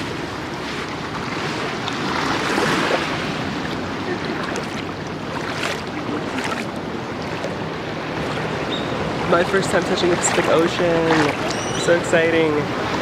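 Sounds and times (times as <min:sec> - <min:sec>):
ocean surf washing onto beach: 0:00.0 - 0:13.0.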